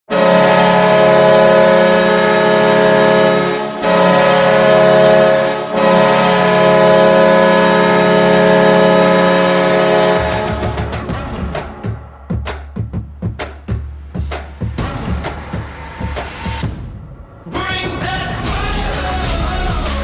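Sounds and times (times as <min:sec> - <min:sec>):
goal horn blaring: 0:00.1 - 0:11.6.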